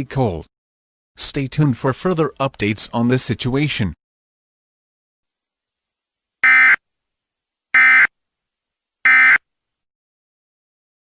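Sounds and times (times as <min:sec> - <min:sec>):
digital data tone bursts: 0:09.1 - 0:09.4.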